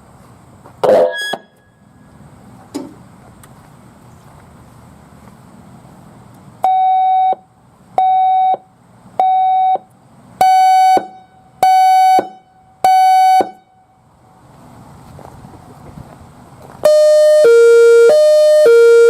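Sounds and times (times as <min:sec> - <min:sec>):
electronic siren beeps: 0:00.8 - 0:01.8, 0:08.0 - 0:09.8, 0:10.4 - 0:13.7, 0:16.8 - 0:19.0.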